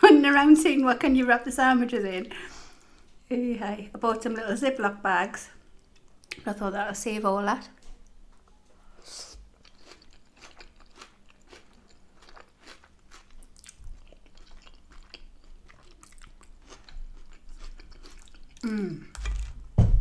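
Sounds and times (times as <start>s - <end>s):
faint steady hum: 0.0s - 19.4s
close-miked chewing: 9.5s - 19.5s.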